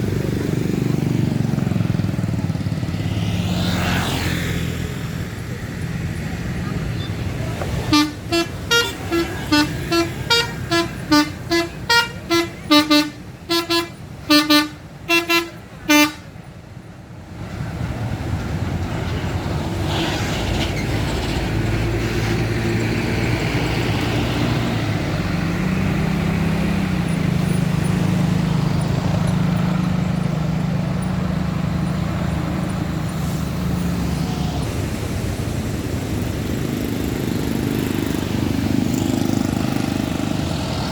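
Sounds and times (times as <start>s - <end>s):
engine and road noise: 0.0s - 40.9s
bus horn playing a quick tune: 7.8s - 16.3s.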